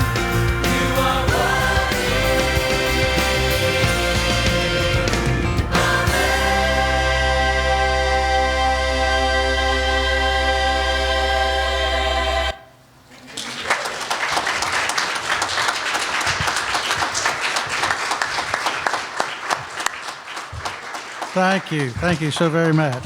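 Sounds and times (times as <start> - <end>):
congregation applauding: 0.0 - 8.0, 13.1 - 23.0
held music chord: 0.0 - 12.7.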